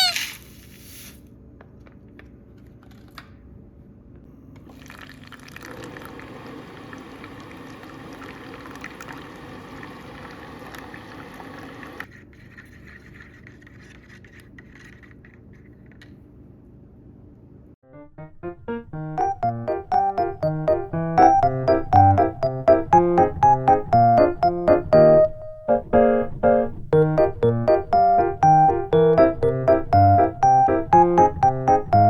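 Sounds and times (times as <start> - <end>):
water pouring into container: 4.7 - 12.0.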